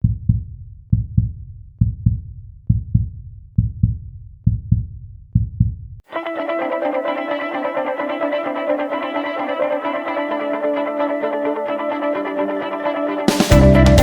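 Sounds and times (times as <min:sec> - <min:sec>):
heartbeat double thumps: 0:00.0 - 0:06.0
guitar music: 0:06.1 - 0:14.0.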